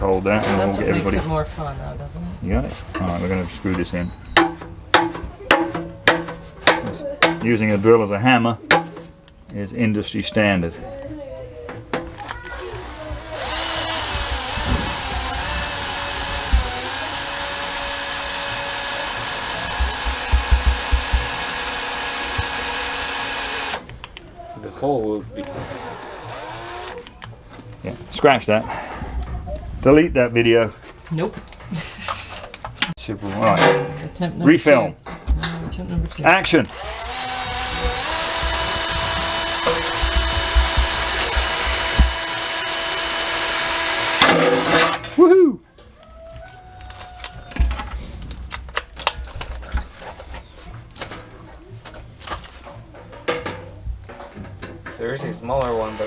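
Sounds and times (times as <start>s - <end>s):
electric drill whining: 12.2s - 23.9s, 25.4s - 27.1s, 36.7s - 45.0s, 55.6s - 56.0s
low knocks: 19.7s - 21.6s.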